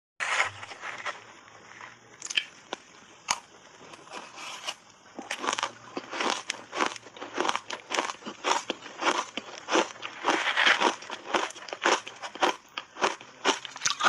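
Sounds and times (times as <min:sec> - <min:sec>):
ice crackling: 0:00.2 - 0:02.9, 0:09.6 - 0:11.9
shaved ice crunching while chewed: 0:02.2 - 0:14.0.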